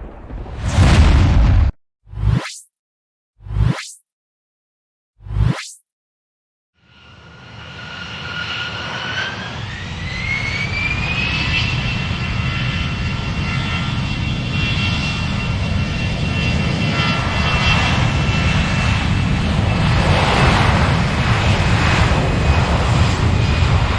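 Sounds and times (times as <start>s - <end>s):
engine whine climbing in pitch: 2.1s - 2.7s, 3.4s - 4.0s, 5.2s - 5.9s, 6.9s - 23.9s
airplane engines running: 6.8s - 23.9s.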